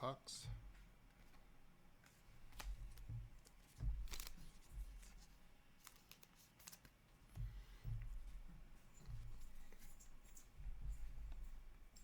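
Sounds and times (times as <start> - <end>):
cards rustling and clicking: 2.1 - 7.0.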